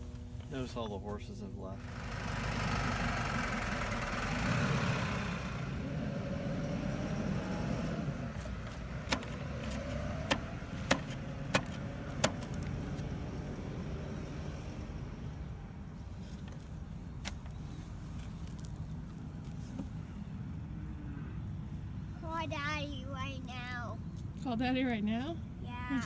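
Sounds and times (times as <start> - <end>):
motor running: 1.8 - 6.4.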